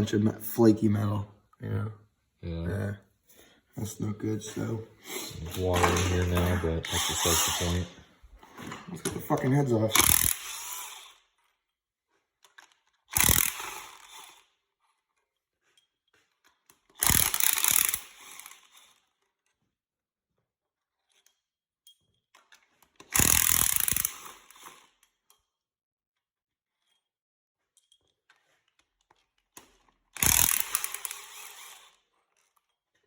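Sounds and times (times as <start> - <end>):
power tool bursts: 5.1 - 8.1, 9.5 - 11.2, 13.1 - 14.5, 17.0 - 19.0, 23.1 - 25.0, 30.2 - 32.0.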